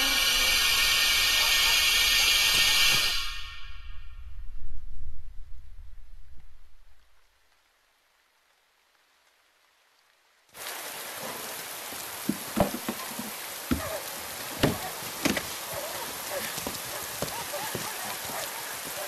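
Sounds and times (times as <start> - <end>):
rain falling: 0.0 - 3.5, 6.1 - 19.0
low rumble: 2.6 - 7.4
drips and knocks: 11.9 - 18.3.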